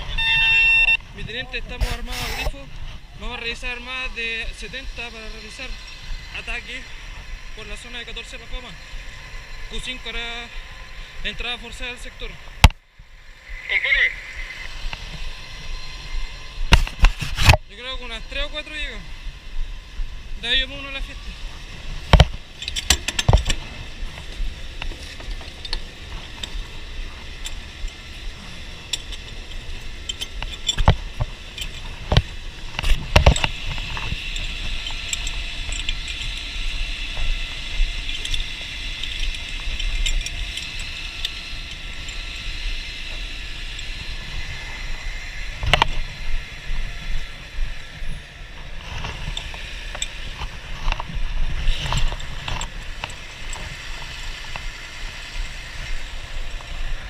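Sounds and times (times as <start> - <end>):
metal clanks of hose gear: 22.1 - 26.6, 28.9 - 42.3.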